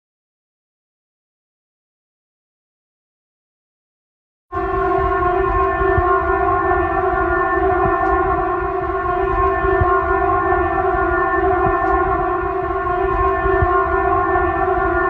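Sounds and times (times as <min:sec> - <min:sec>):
siren steady tone: 0:04.6 - 0:15.0.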